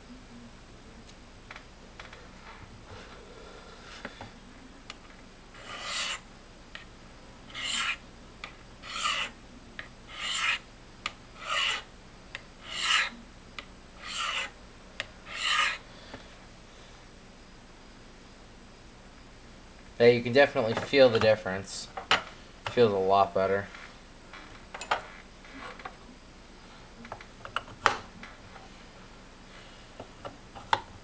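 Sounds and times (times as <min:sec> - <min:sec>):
knife scraping on ceramic stone: 0:05.6 - 0:06.2, 0:07.5 - 0:08.0, 0:08.8 - 0:09.4, 0:10.1 - 0:10.6, 0:11.4 - 0:11.8, 0:12.6 - 0:13.1, 0:14.0 - 0:14.5, 0:15.3 - 0:15.8.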